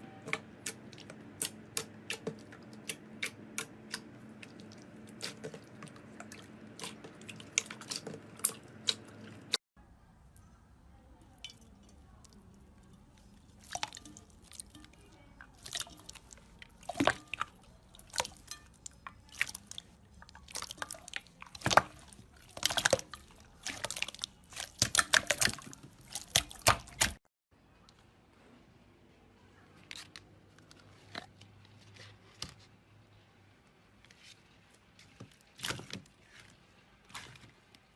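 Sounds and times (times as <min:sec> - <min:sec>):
slime squished by hand: 0:13.2 - 0:27.2.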